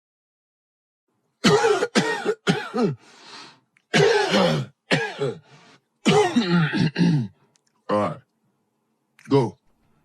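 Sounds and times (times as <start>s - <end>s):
slowed person coughing with reverb: 1.4s - 3.0s, 3.9s - 7.4s.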